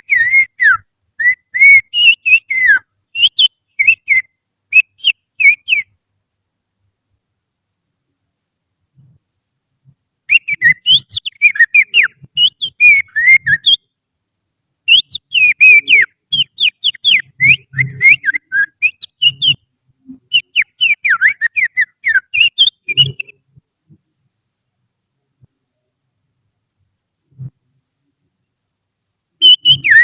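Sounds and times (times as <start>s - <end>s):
finger whistling bird song: 0.0s - 5.9s, 10.3s - 13.8s, 14.9s - 19.7s, 20.3s - 23.4s, 29.4s - 30.0s.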